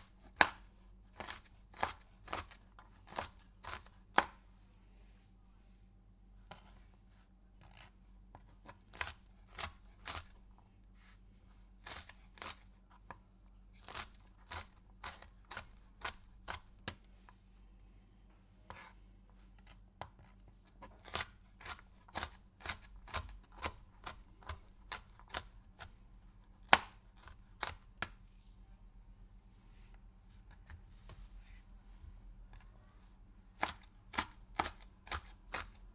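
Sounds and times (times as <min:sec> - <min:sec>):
knife cutting through pepper: 0:00.0 - 0:04.4, 0:08.6 - 0:10.4, 0:11.8 - 0:12.7, 0:13.8 - 0:16.8, 0:19.6 - 0:25.9, 0:33.6 - 0:35.9.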